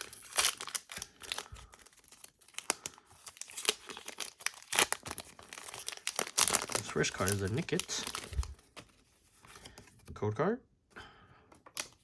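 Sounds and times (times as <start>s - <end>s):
foil pack tearing and crinkling: 0.0s - 8.9s.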